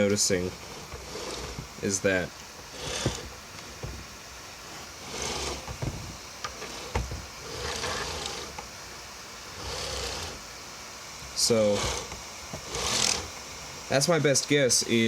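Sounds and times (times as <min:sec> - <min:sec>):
rustling: 0:00.0 - 0:08.7.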